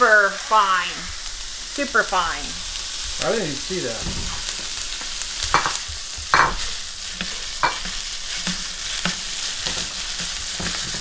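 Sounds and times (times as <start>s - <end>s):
noodles sizzling in a frying pan: 0.0s - 11.0s
utensil scraping a pan: 4.1s - 11.0s.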